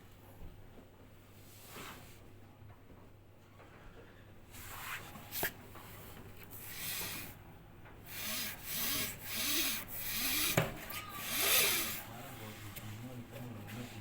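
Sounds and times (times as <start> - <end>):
clothes dryer screeching: 8.1 - 12.8.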